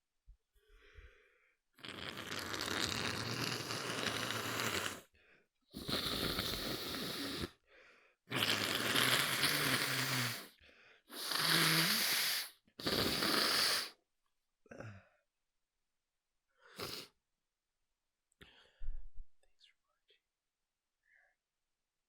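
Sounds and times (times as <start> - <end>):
person blowing through nose: 1.8 - 5.1, 5.8 - 7.6, 8.3 - 10.5, 11.1 - 14.0, 16.7 - 17.2.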